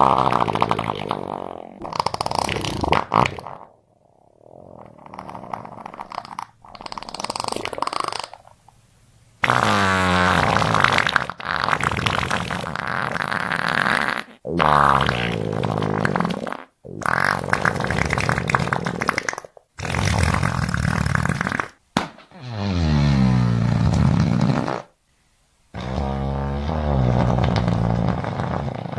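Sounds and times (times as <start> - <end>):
fart sounds: 0.0 - 3.8, 4.4 - 8.6, 9.4 - 25.0, 25.7 - 28.9.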